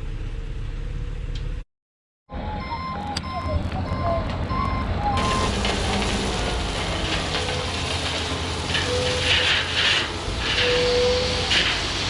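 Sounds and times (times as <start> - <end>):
diesel engine running: 2.4 - 12.0.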